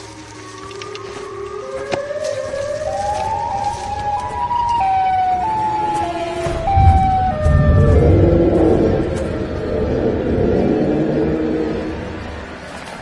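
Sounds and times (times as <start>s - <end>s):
siren-like gliding tone: 0.0s - 12.4s
low rumble: 6.3s - 13.0s.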